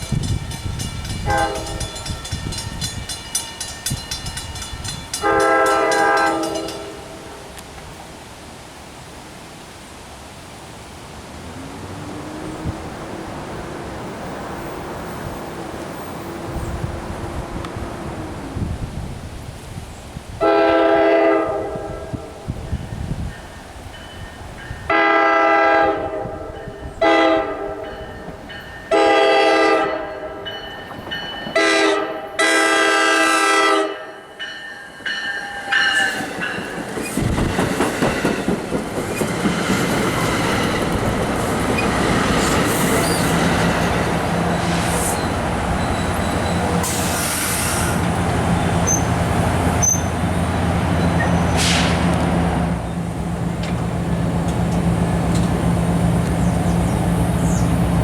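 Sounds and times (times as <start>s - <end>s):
train rumble and wheel clatter: 0.0s - 58.0s
train horn blasts: 1.2s - 2.0s, 5.2s - 7.4s, 20.4s - 22.5s, 24.9s - 28.2s, 28.9s - 30.5s, 31.6s - 34.4s.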